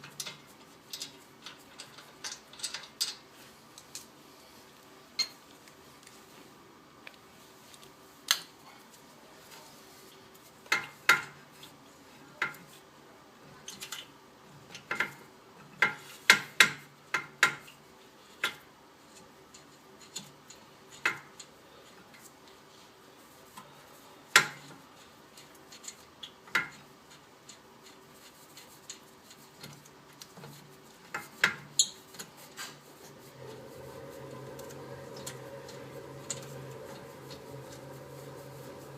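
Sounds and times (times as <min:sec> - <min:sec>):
metal tools clinking: 0:00.1 - 0:03.2
low steady hum: 0:32.1 - 0:38.9.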